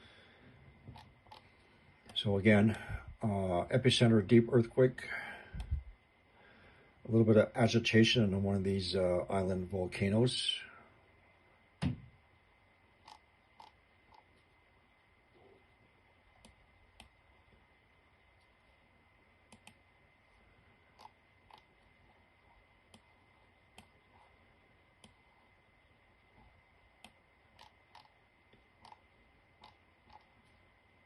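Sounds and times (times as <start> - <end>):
faint high whine: 0.0 - 31.0
room hiss: 0.0 - 31.0
computer mouse clicks: 0.9 - 2.2, 13.0 - 14.5, 16.4 - 17.2, 19.5 - 19.8, 21.0 - 21.9, 22.9 - 24.3, 25.0 - 25.3, 26.4 - 30.7.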